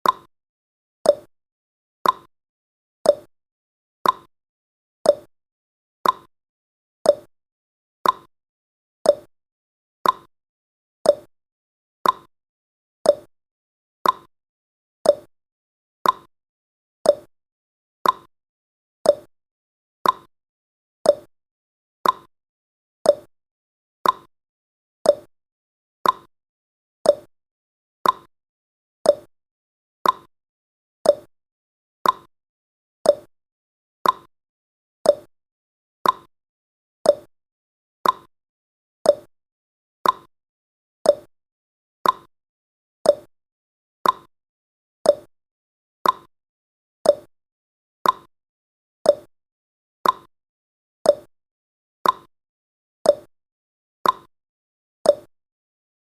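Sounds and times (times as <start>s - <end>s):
clock ticking: 34.0s - 34.3s, 38.0s - 38.3s, 42.0s - 42.3s, 44.0s - 44.3s, 46.0s - 46.3s.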